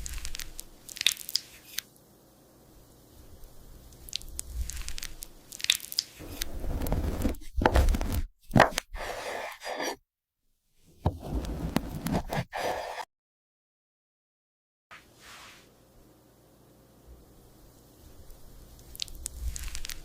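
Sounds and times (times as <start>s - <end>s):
eating soft cake crackles: 0.0s - 1.9s, 3.3s - 8.2s, 18.2s - 20.0s.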